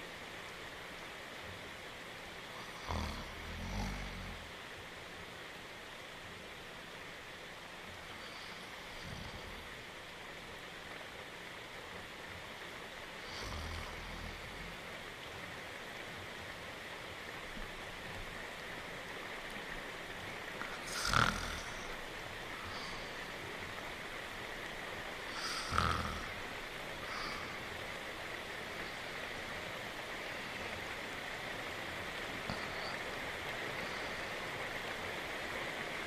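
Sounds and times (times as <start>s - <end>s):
steady rain: 0.0s - 36.0s
cartoon dog snoring: 20.8s - 21.8s, 25.4s - 26.3s.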